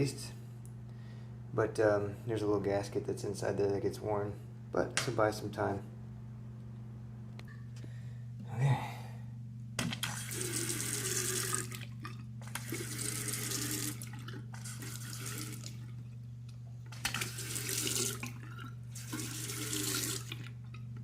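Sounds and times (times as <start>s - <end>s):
faucet running into a sink: 10.0s - 11.8s, 12.4s - 15.8s, 17.0s - 20.5s.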